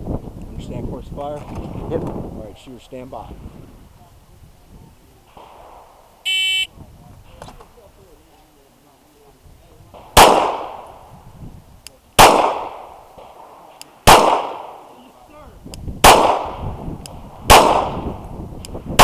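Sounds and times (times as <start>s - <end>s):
pistol shots: 10.0s - 10.9s, 12.2s - 14.9s, 16.0s - 16.6s, 17.5s - 18.2s.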